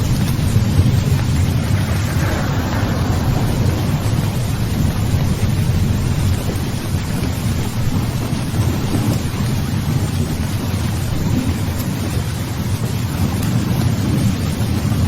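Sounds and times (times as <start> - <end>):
low rumble of thunder: 0.0 - 15.0
rain hiss: 0.0 - 15.0.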